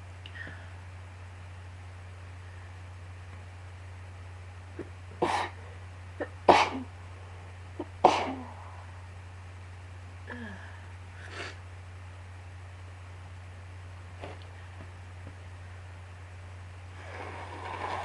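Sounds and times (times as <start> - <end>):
person sneezing: 4.8 - 5.6, 6.2 - 6.9, 7.8 - 8.6.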